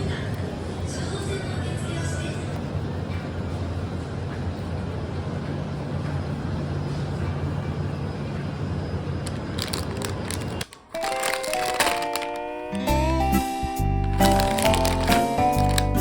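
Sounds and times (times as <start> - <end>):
music with held notes: 11.0 - 16.0.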